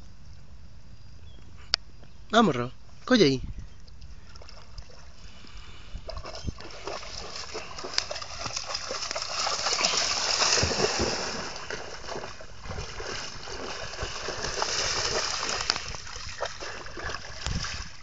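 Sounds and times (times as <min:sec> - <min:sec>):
dog splashing through water: 0:06.1 - 0:18.0.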